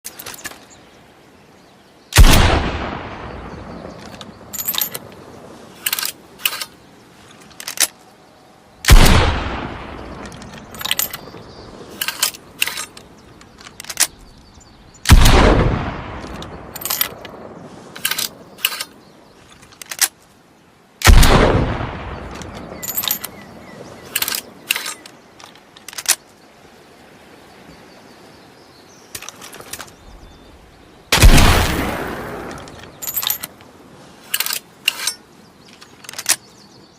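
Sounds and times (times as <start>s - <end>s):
gunshots with echoing decay: 2.2s - 3.9s, 8.9s - 10.1s, 15.1s - 17.1s, 21.0s - 22.9s, 31.1s - 32.7s.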